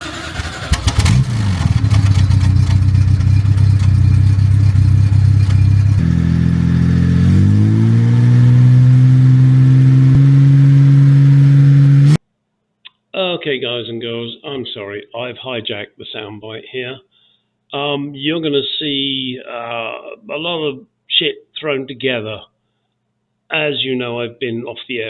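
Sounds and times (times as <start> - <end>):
car engine starting and idling: 0.0 - 12.2.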